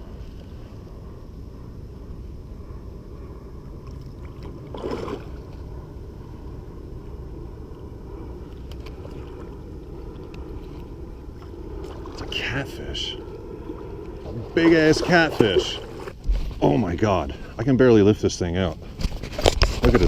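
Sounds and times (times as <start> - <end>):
wind and water rumble: 0.0 - 20.0.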